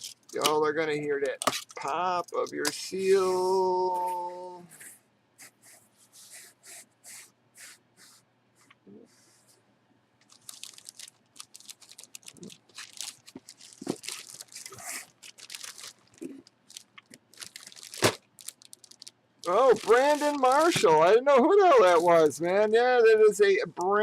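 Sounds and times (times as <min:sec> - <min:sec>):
packaging crinkling and tearing: 0:10.2 - 0:22.3.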